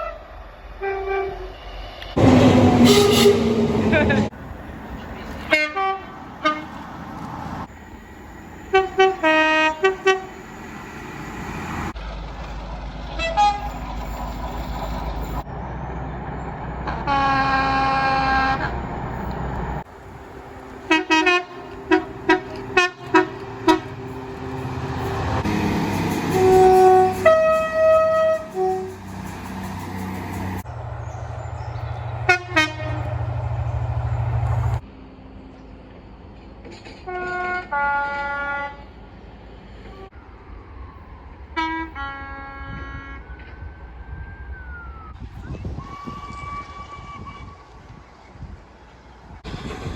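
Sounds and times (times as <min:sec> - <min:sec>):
train horn blasts: 0:00.0 - 0:01.6, 0:02.2 - 0:04.3, 0:05.4 - 0:06.8, 0:08.6 - 0:10.4, 0:13.2 - 0:13.8, 0:16.8 - 0:19.0, 0:19.9 - 0:29.8, 0:32.2 - 0:34.8, 0:37.0 - 0:38.9, 0:41.6 - 0:43.4, 0:45.9 - 0:47.9.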